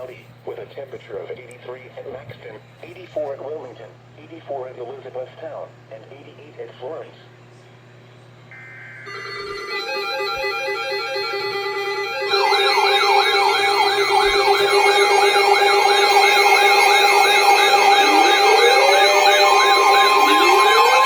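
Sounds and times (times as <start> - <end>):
high electronic buzz: 8.5 - 21.0
stepped two-tone alarm: 8.5 - 21.0
wailing siren sweep: 8.6 - 21.0.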